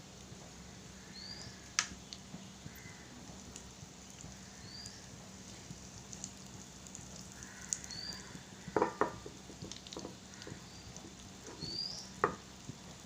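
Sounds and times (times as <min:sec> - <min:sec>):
squid sizzling in frying oil: 0:00.1 - 0:13.0
sharp clicks: 0:01.4 - 0:02.2.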